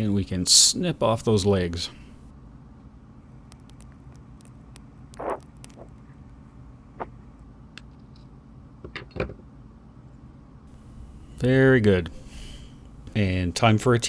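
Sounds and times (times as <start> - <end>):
faint handling ticks: 3.3 - 7.4, 10.7 - 14.0.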